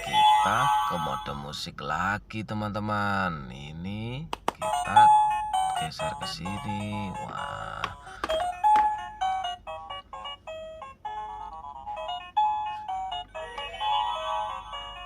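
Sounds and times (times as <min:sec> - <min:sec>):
electronic toy melody beeping: 0:00.0 - 0:01.6, 0:04.6 - 0:15.0
toy click: 0:07.8 - 0:09.1.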